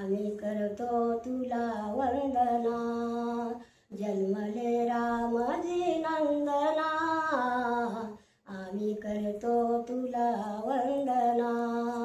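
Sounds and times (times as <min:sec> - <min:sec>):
elderly woman singing: 0:00.0 - 0:12.0
woman breathing: 0:03.6 - 0:03.9, 0:08.1 - 0:08.5.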